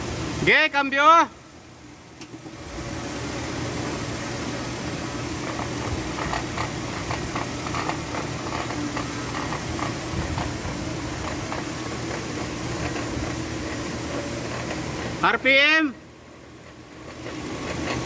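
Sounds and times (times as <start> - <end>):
drivetrain hum: 2.0 - 18.0
short uneven clicks: 5.4 - 10.6.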